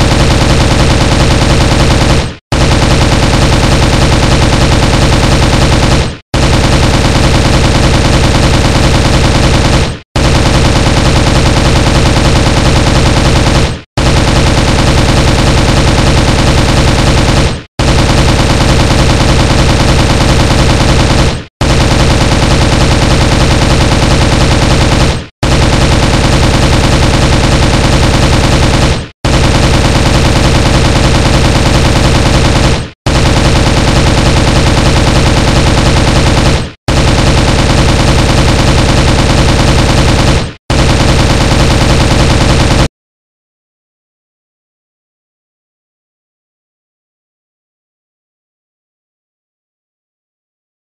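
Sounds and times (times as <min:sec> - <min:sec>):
automatic rifle fire: 0:00.0 - 0:42.9.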